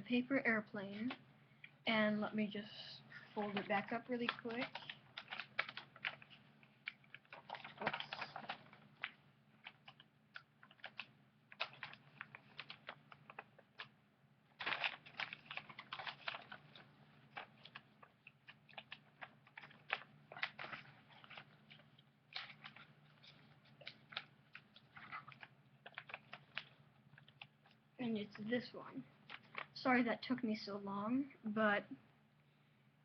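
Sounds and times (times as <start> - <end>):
faint low hum: 0.0 - 33.0
paper being folded and creased: 3.2 - 27.8, 28.4 - 29.8.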